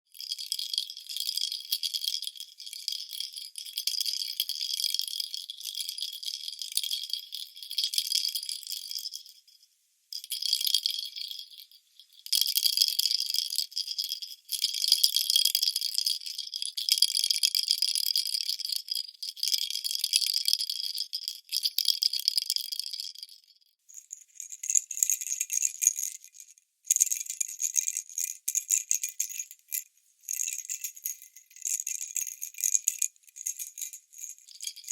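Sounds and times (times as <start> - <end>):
baby rattle jingling: 0.2 - 2.0, 28.9 - 34.9.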